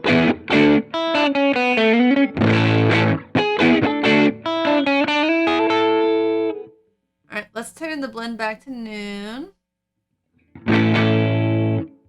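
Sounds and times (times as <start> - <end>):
electric guitar playing: 0.0 - 6.7, 10.5 - 12.0.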